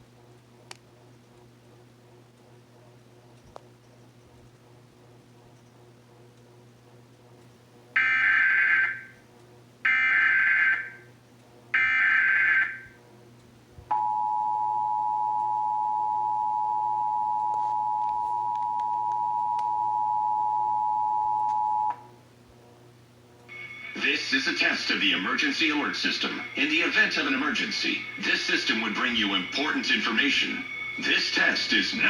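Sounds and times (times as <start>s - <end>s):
digital data bursts: 23.5s - 32.0s.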